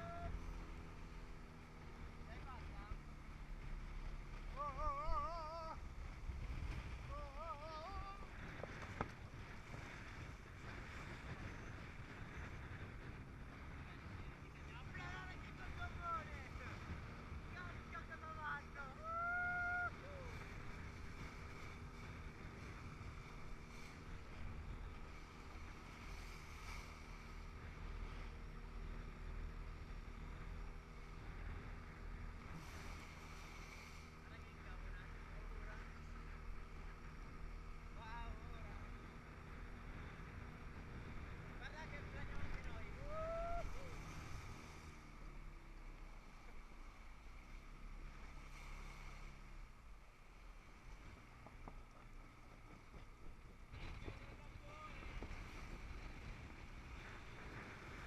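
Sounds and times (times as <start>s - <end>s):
water rushing around boat: 0.0s - 58.0s
wind rumbling on microphone: 0.0s - 58.0s
wind buffeting microphone: 3.7s - 18.2s, 52.8s - 58.0s.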